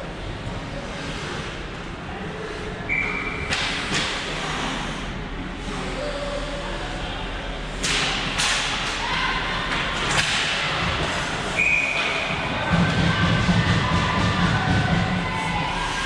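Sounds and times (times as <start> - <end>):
spectators' voices: 0.0 - 16.0
pucks hitting the boards: 7.8 - 14.3.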